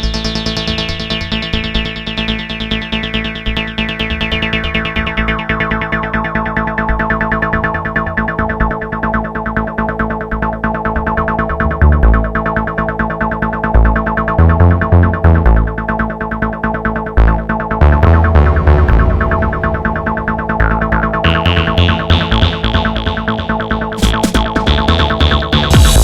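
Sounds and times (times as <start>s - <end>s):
heavy deep bass hits: 17.9s - 23.1s, 25.7s - 26.0s
fast repeating synthesizer notes: 24.0s - 26.0s.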